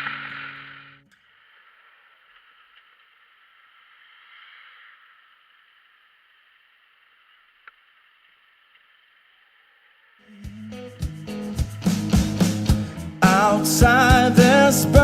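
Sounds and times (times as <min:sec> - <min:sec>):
faint hiss: 0:00.0 - 0:15.0
music with guitar and beat: 0:10.3 - 0:15.0.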